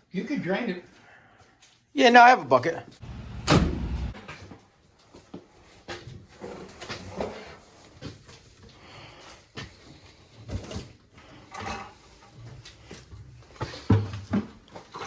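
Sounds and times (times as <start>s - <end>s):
tools and metal parts clattering: 10.0s - 15.0s.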